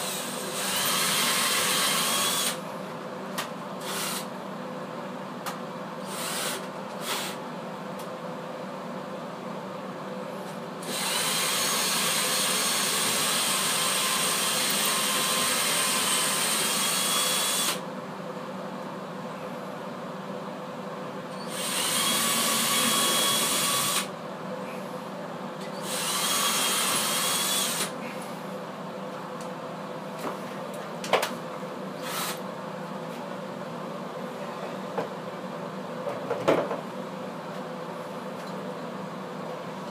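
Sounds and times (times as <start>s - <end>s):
power drill whining: 0.0s - 2.6s, 3.8s - 4.3s, 10.8s - 17.8s, 21.3s - 24.1s, 25.8s - 27.9s, 32.0s - 32.4s.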